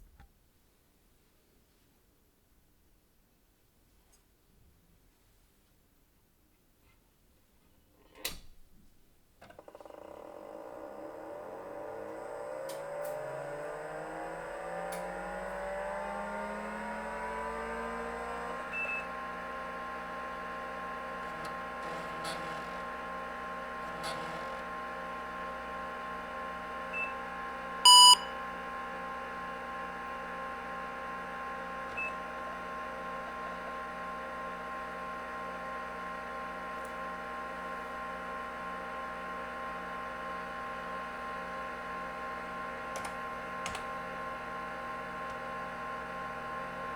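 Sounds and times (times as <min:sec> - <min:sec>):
computer fan and disk whine: 0:10.5 - 0:24.6, 0:27.9 - 0:28.3
short loud computer beep: 0:27.9 - 0:28.3.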